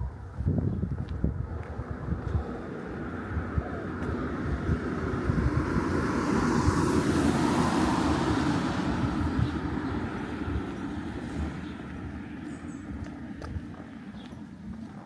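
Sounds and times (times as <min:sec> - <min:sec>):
car passing by: 0:01.8 - 0:14.0.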